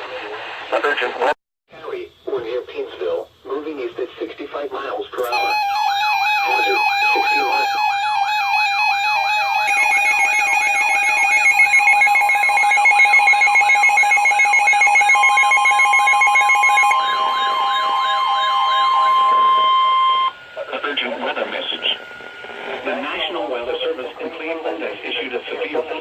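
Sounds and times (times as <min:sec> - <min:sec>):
electronic yelp siren: 0:05.2 - 0:23.8
steady alarm tones: 0:05.2 - 0:26.0.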